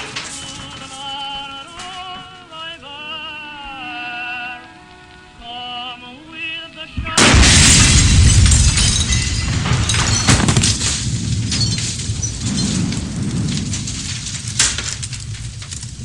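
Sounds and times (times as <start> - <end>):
glass and debris shattering: 0.0 - 2.2, 7.2 - 16.0
sharp crack: 0.0 - 2.5, 7.0 - 16.0
heavy gunfire: 7.2 - 16.0.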